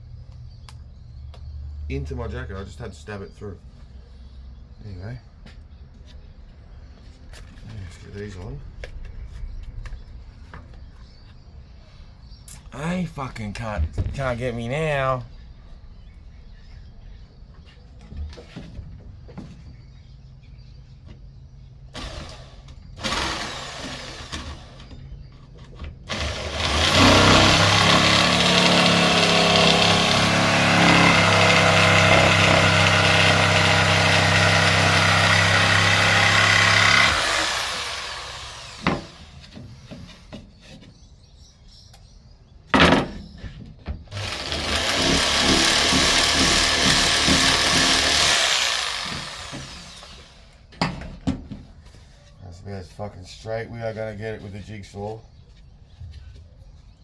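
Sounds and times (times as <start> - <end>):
electric jigsaw cutting: 22.0 - 24.9, 26.1 - 39.4, 44.1 - 50.6.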